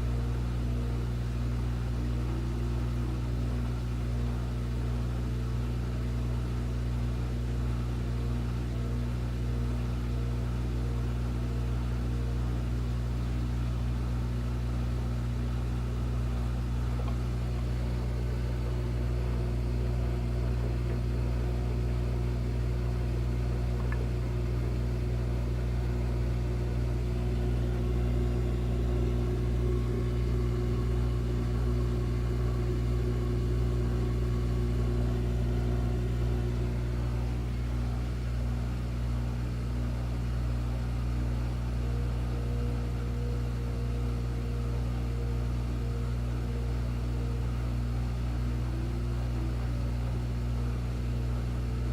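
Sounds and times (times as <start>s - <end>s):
washing machine motor hum: 0.0s - 51.9s
faint high whine: 13.0s - 51.9s.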